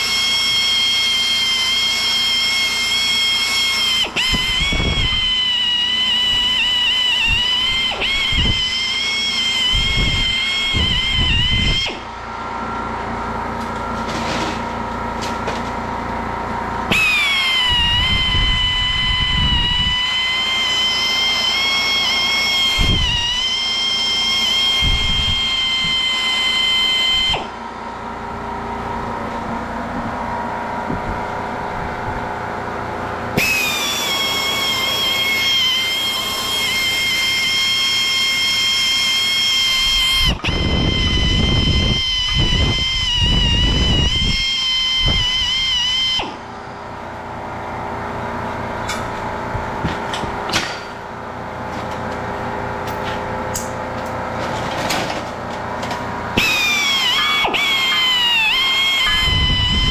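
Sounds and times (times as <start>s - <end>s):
welding arc crackling: 33.4s - 46.4s.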